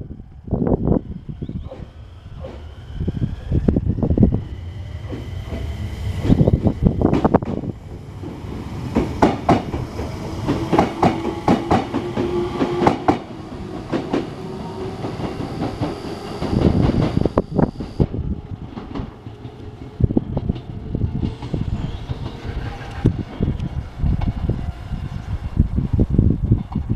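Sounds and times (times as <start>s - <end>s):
train rumble: 0.0s - 26.9s
train wheels clattering over joints: 7.0s - 23.4s
steady hum: 12.0s - 18.0s.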